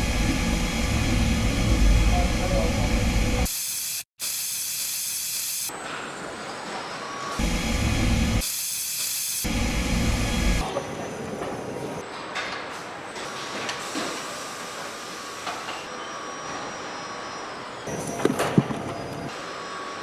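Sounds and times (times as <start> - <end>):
hiss of air and machinery: 0.0 - 5.8, 6.7 - 10.6, 12.8 - 16.0.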